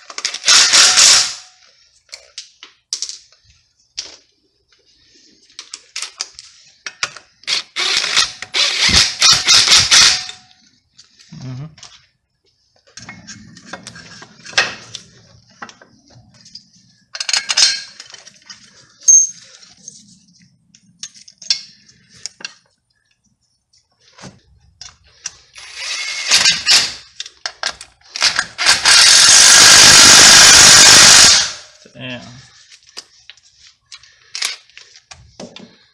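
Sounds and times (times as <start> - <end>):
impact wrench burst: 0.4 - 1.5, 7.5 - 10.4, 25.6 - 27.1, 28.2 - 31.7
metal tools clinking: 16.5 - 20.1.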